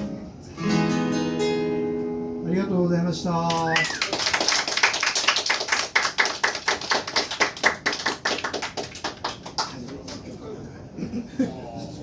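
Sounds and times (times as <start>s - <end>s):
audience clapping: 3.5s - 10.3s.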